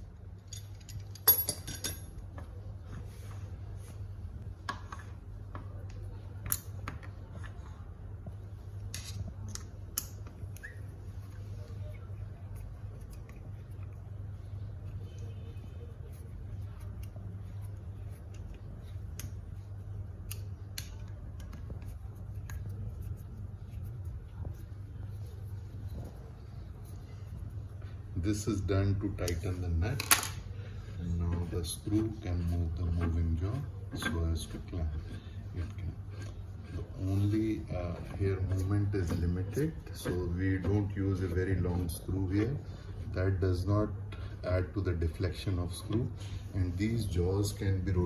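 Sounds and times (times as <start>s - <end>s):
steady low hum: 0.0s - 48.0s
metal clinking against metal: 0.4s - 2.2s.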